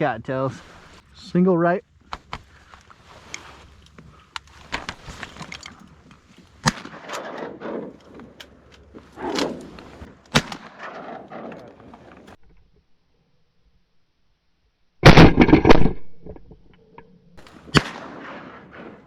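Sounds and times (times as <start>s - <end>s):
shotgun shots: 6.6s - 7.9s, 10.3s - 11.9s, 17.4s - 19.0s.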